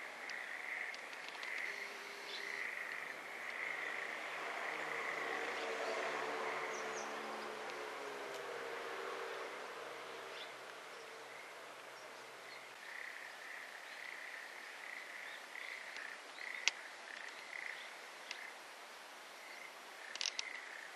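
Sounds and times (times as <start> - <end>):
frogs calling: 0.0 - 8.1, 10.2 - 18.6, 19.3 - 20.9
sharp clicks: 20.1 - 20.5.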